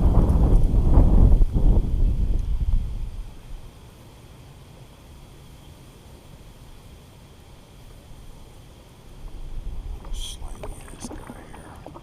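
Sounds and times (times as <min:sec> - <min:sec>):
wind buffeting the microphone: 0:00.0 - 0:03.7, 0:09.1 - 0:12.0.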